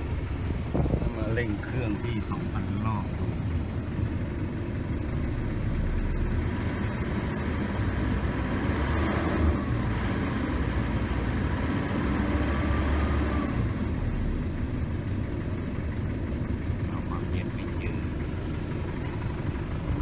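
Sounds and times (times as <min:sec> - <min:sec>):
pickup engine running steadily: 0:00.0 - 0:20.0.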